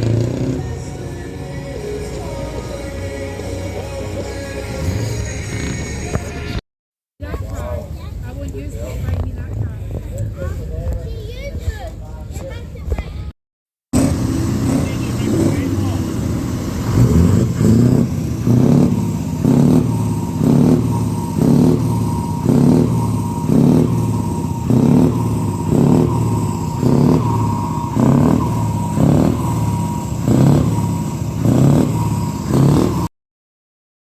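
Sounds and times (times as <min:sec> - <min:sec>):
engine running with slow pulse: 0:00.0 - 0:06.6, 0:14.0 - 0:33.1.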